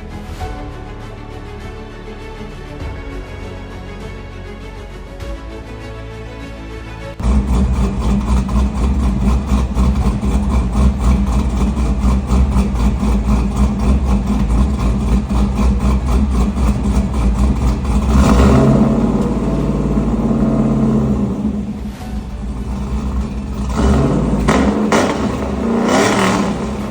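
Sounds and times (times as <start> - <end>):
truck engine revving: 7.2 - 26.9.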